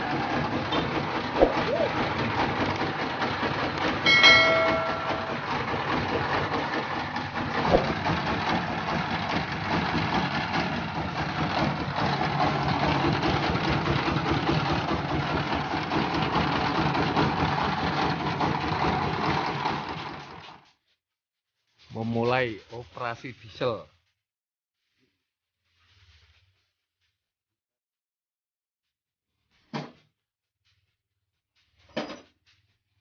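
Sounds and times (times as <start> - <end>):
diesel engine running roughly: 0.0 - 20.7
short high-pitched tone: 4.1 - 5.6.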